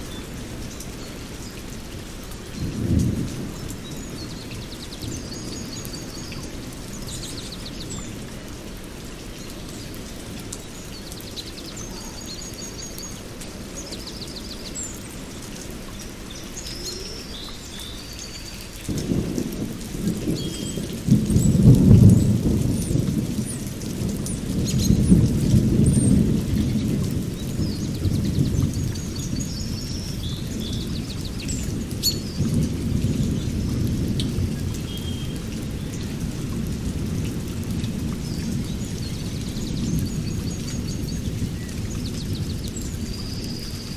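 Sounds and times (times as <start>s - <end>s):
rain falling: 0.0s - 43.9s
rolling thunder: 2.6s - 6.9s, 18.9s - 43.9s.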